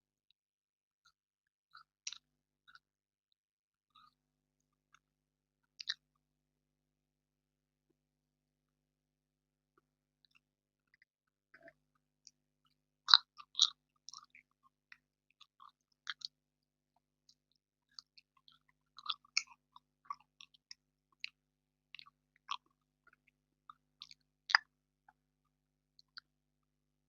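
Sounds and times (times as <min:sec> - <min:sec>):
chewing marshmallow: 0:01.8 - 0:02.8, 0:05.8 - 0:06.0, 0:13.1 - 0:16.4, 0:17.3 - 0:24.7.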